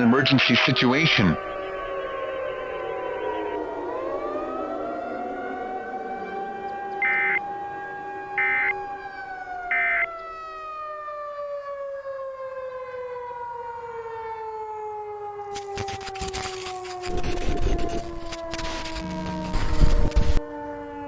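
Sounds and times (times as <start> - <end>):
warning siren winding down: 0.0 - 21.0
electronic data bursts: 7.0 - 7.4, 9.7 - 10.1, 15.5 - 20.4
crackling static: 15.5 - 20.4.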